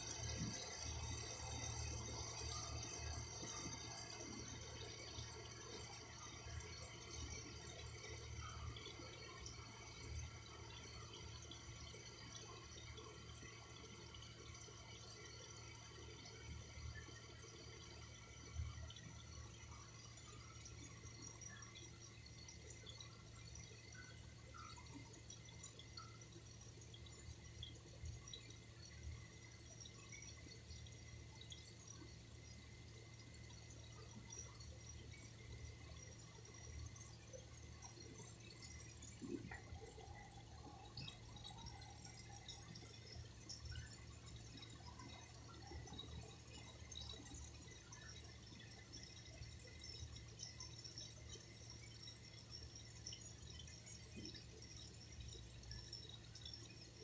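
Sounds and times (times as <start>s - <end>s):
faint running water: 0.0s - 57.0s
water drips: 32.8s - 56.9s.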